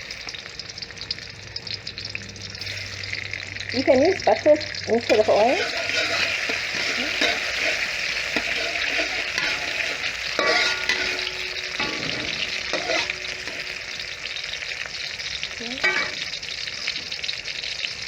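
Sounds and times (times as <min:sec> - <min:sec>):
garlic sizzling in hot oil: 0:00.0 - 0:18.0
utensil scraping a pan: 0:05.1 - 0:14.6.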